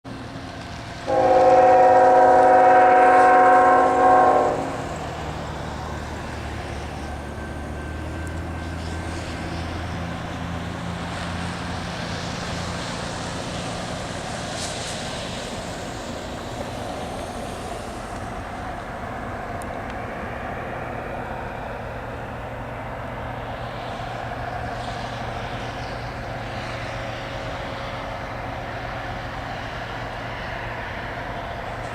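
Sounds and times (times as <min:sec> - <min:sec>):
diesel engines rumbling: 0:00.1 - 0:31.9
locomotive air horn: 0:01.1 - 0:05.0.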